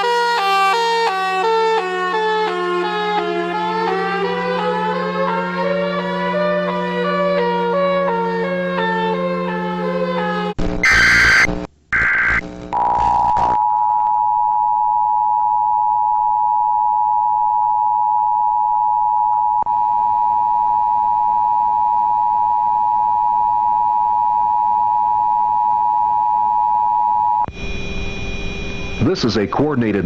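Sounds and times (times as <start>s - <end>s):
two-note alert tone: 2.1s - 10.5s
digital data bursts: 10.8s - 13.6s.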